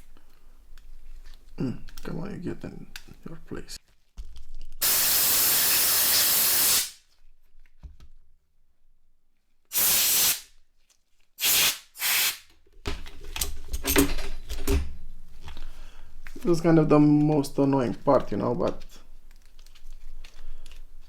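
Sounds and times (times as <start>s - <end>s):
compressed air hissing bursts: 4.8s - 7.0s, 9.7s - 10.5s, 11.4s - 12.4s.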